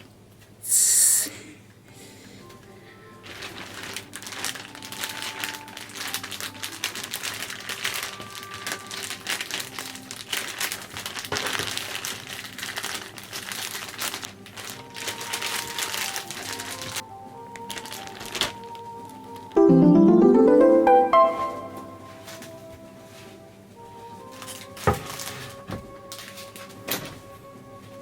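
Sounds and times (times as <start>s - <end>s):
soft background music: 1.8s - 28.0s
crinkling and rustling: 3.2s - 19.5s, 24.2s - 28.0s.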